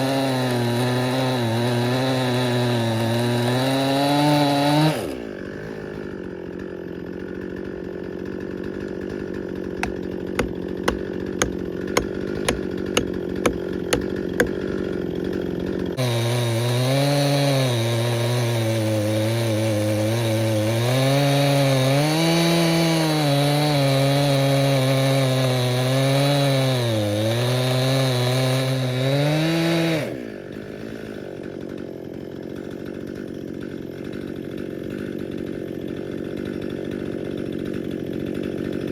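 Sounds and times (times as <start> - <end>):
chainsaw cutting log: 0.0 - 38.9
chainsaw idling: 4.7 - 17.1, 29.8 - 38.9.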